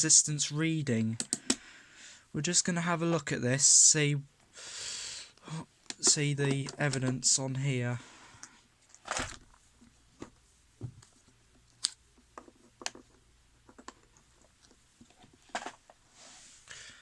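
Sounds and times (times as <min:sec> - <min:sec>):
plastic plugs clicking and tapping: 0:01.2 - 0:01.6, 0:05.8 - 0:07.2, 0:11.7 - 0:14.5.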